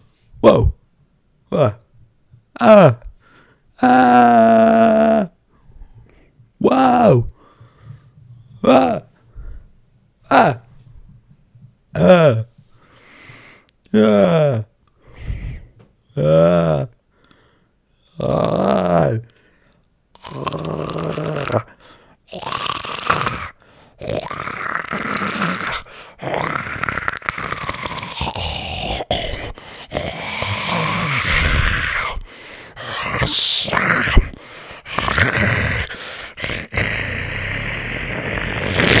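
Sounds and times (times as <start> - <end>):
person yelling and screaming: 32.8 - 39.0.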